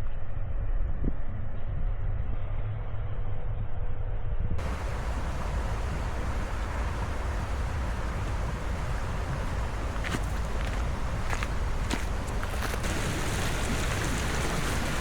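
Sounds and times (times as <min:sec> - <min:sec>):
footsteps in snow: 0:04.6 - 0:15.0
wind buffeting microphone: 0:04.6 - 0:15.0.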